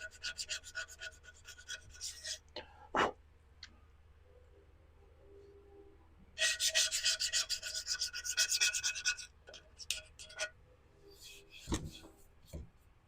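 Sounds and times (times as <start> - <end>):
scraping on ceramic pot: 0.0 - 2.5, 6.4 - 11.7.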